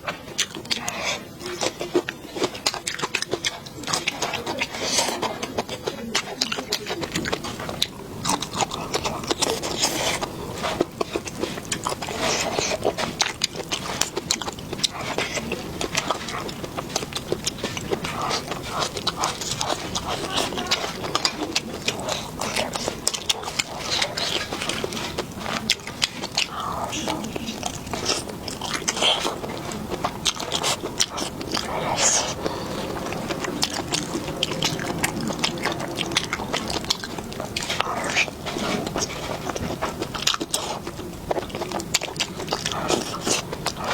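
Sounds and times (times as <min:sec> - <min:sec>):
sharp mouth clicks and smacks: 0:00.0 - 0:43.9
wet chewing and biting: 0:00.0 - 0:43.9.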